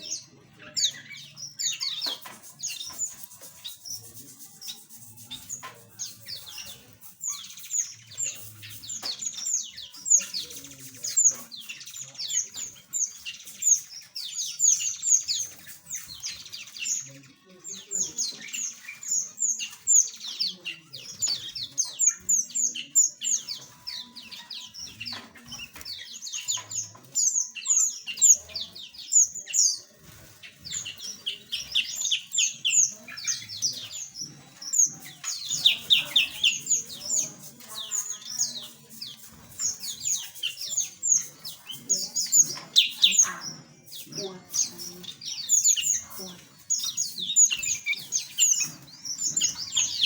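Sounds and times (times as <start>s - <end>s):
small birds chirping: 0.0s - 50.0s.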